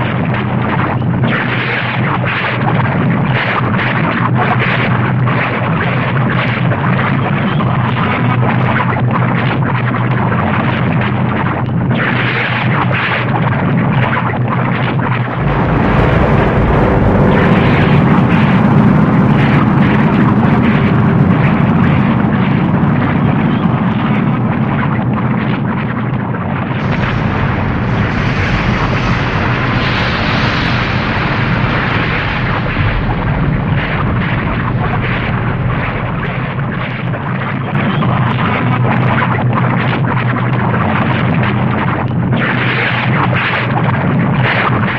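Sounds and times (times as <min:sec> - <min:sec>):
deep crackling rumble: 0:00.0 - 0:44.9
hissing surge: 0:15.2 - 0:23.4, 0:26.8 - 0:37.7.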